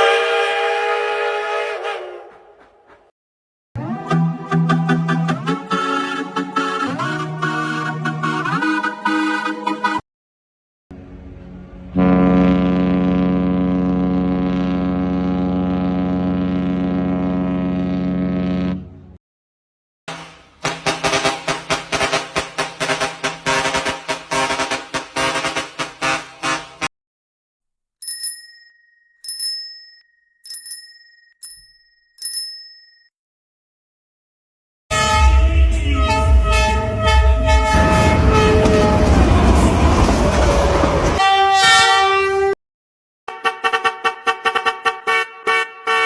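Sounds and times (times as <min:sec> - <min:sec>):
long deep horn blast: 0:10.9 - 0:19.2, 0:34.9 - 0:40.1
bicycle bell ringing: 0:28.0 - 0:33.1.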